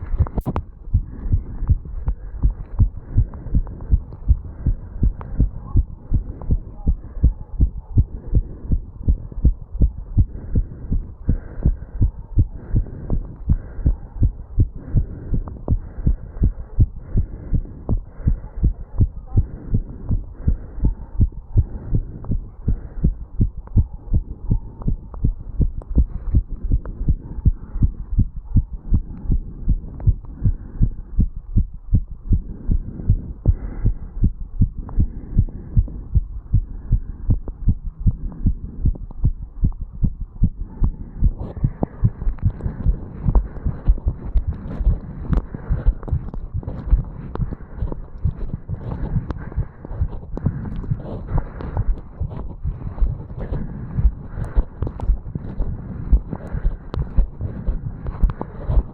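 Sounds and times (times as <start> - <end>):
fast heartbeat: 0.0 - 58.9.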